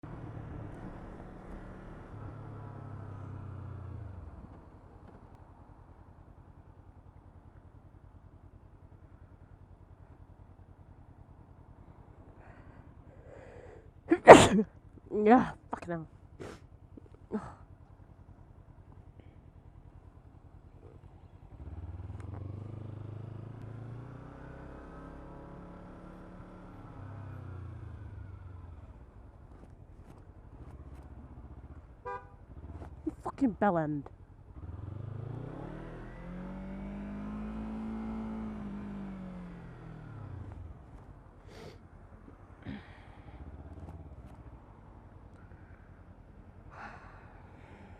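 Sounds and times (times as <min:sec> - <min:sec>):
motorcycle engine revving: 0:00.0 - 0:05.3, 0:20.3 - 0:46.0.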